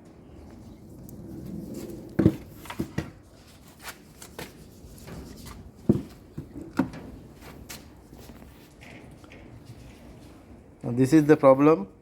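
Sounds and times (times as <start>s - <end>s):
knocks and clicks of parts and tools: 5.8s - 7.1s.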